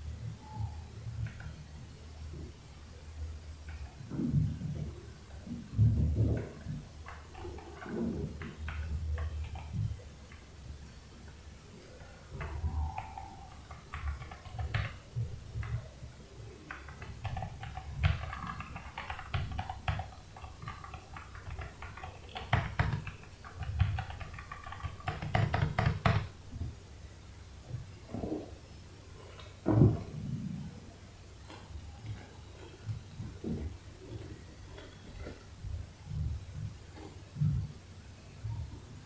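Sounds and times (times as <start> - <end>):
mechanical keyboard typing: 6.4 - 9.9, 12.3 - 15.9, 16.6 - 26.3.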